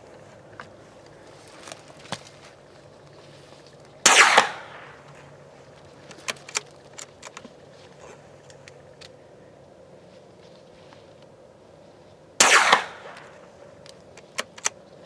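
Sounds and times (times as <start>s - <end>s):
rifle shot: 4.0s - 5.0s, 12.4s - 13.4s.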